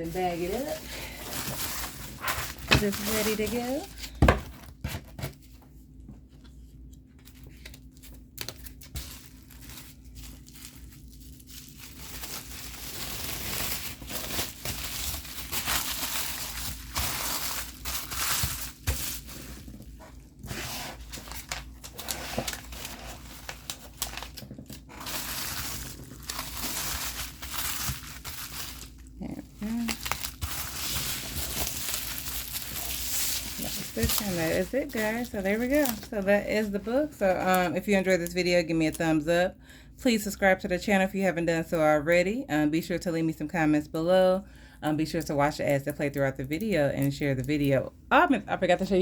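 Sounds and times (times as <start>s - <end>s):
bag crinkling and rustling: 0.0s - 4.8s, 7.2s - 37.1s.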